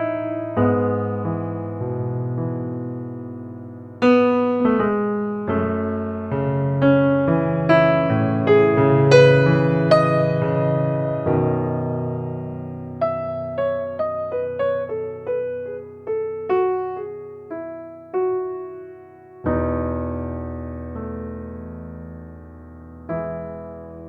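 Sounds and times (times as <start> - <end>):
slow piano melody: 0.0 - 24.0.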